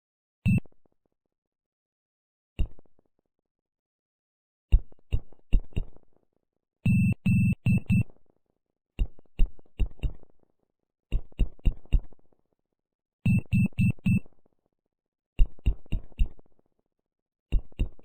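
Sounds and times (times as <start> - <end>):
morse code electronic beeps: 6.9 - 8.0, 13.3 - 14.2.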